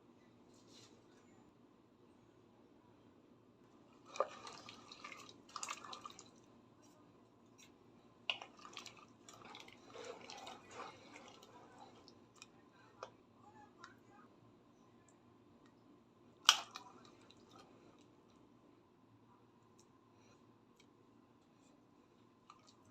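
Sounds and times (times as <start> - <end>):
water drips and splashes: 4.0 - 6.5, 8.3 - 12.5.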